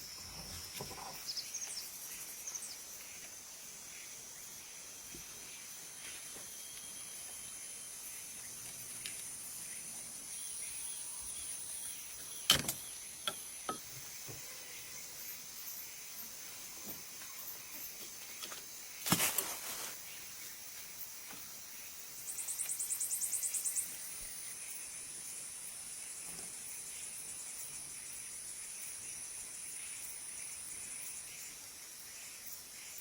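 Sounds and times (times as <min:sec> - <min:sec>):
insects chirring: 0:00.0 - 0:33.0
rapid pulsing insect trill: 0:00.0 - 0:33.0
sharp knocks or cracks: 0:12.5 - 0:12.8.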